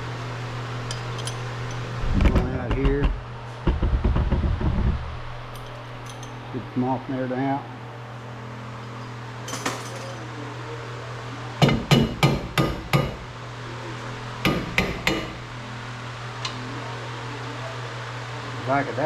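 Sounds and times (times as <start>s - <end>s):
steady low hum: 0.0s - 19.0s
hammer striking metal: 11.6s - 13.2s, 14.4s - 15.4s.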